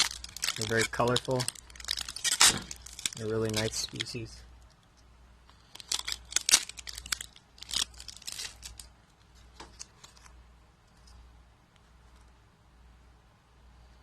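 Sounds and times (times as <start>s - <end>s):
packaging crinkling: 0.0s - 4.4s, 5.5s - 8.9s.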